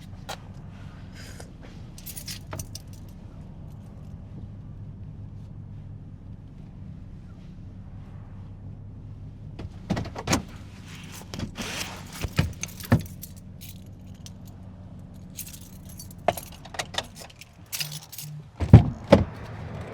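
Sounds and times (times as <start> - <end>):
car low hum: 0.0 - 19.9
car keys jangling: 1.9 - 3.2, 10.4 - 19.5.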